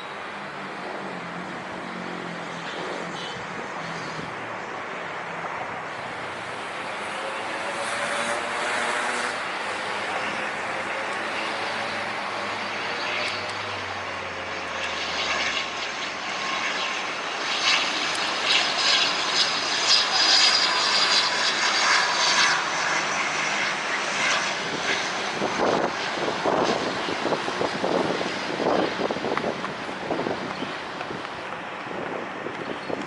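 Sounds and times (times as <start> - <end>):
airplane engines passing: 0.0 - 33.0
wind buffeting microphone: 17.6 - 33.0.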